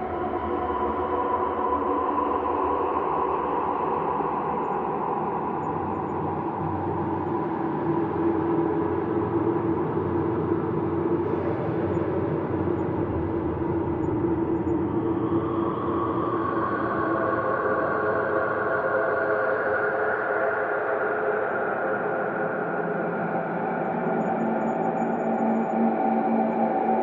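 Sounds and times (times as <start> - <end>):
ambient drone hum tones: 0.0 - 27.0.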